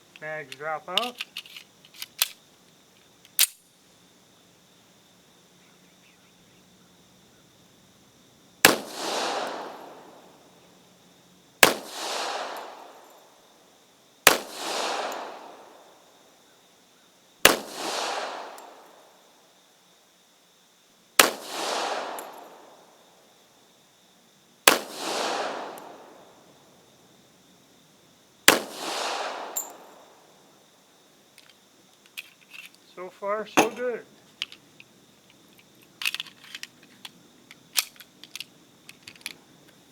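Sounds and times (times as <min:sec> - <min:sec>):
pistol shots with echo: 0:08.6 - 0:10.2, 0:11.6 - 0:13.0, 0:14.3 - 0:15.8, 0:17.5 - 0:18.8, 0:21.2 - 0:22.7, 0:24.7 - 0:26.2, 0:28.5 - 0:30.1.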